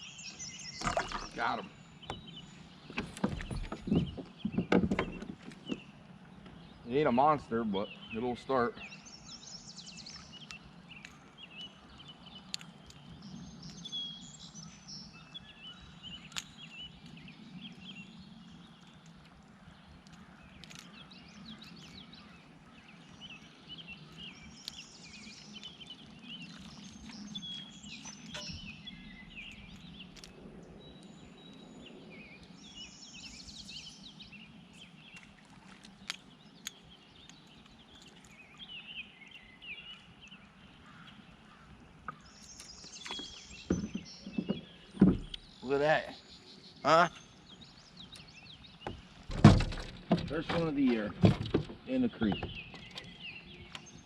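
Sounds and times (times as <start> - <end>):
songbirds chirping and trilling: 0.0 - 54.0
loud knocks: 48.8 - 52.6.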